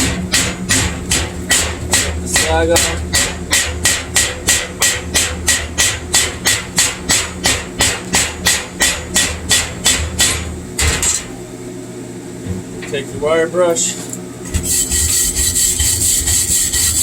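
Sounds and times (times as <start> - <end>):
hammer striking metal: 0.0 - 11.1.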